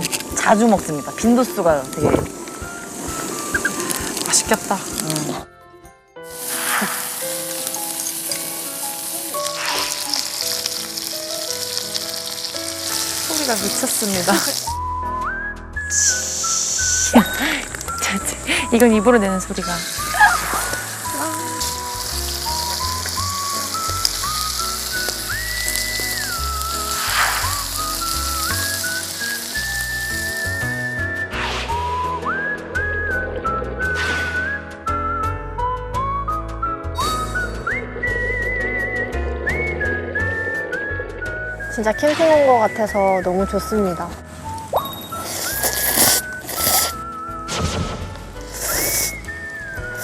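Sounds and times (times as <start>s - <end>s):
background music with whistled melody: 0.0s - 50.0s
meat sizzling on a grill pan: 6.3s - 14.8s, 15.9s - 31.0s, 45.2s - 47.0s, 48.5s - 49.2s.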